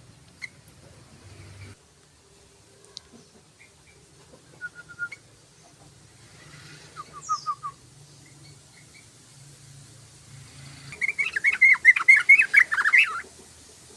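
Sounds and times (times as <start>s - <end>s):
bulbul calling: 6.8s - 9.1s, 10.9s - 13.4s.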